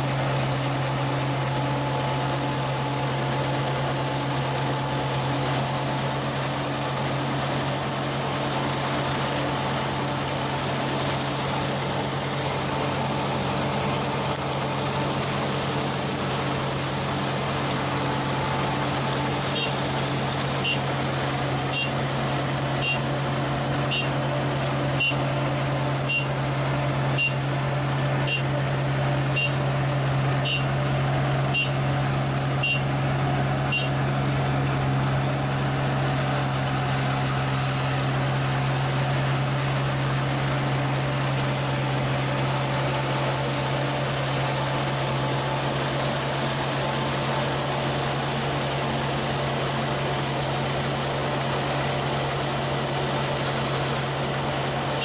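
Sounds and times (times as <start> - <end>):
combine harvester engine drone: 0.0 - 55.0
short high electronic beep: 23.9 - 24.2, 26.1 - 26.4, 27.2 - 27.4, 30.4 - 30.7, 31.5 - 31.8, 32.6 - 32.9, 33.7 - 34.0.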